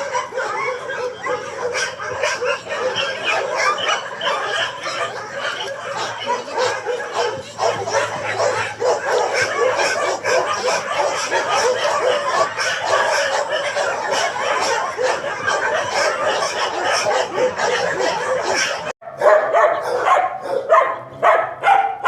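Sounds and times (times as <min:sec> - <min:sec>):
dogs barking and yapping: 0:00.0 - 0:22.0
single loud dog barks: 0:00.0 - 0:22.0.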